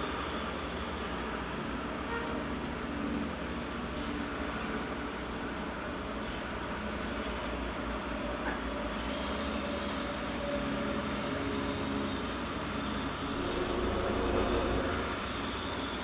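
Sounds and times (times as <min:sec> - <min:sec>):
mulching machinery drone: 0:07.7 - 0:16.0.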